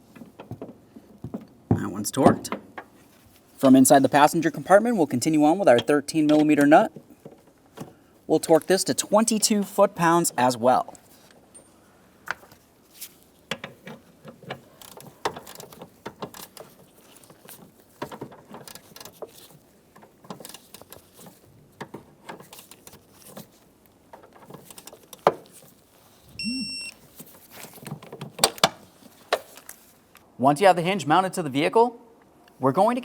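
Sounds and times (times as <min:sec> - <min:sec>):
short high electronic beep: 0:26.4 - 0:26.9.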